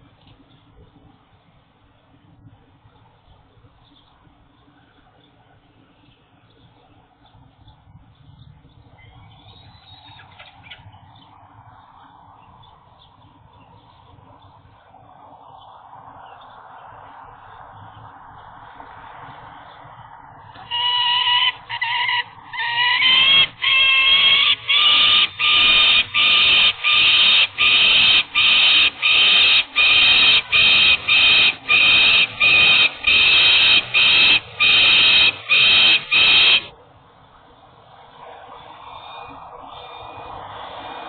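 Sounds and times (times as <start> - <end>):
falcon harsh calls: 20.5 - 36.7.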